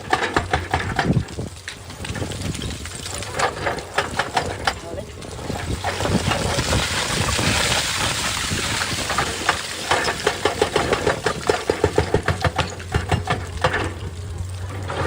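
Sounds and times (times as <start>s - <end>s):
clatter of hard knocks: 0.0s - 4.9s, 7.6s - 14.2s
diesel engine humming: 10.4s - 15.0s.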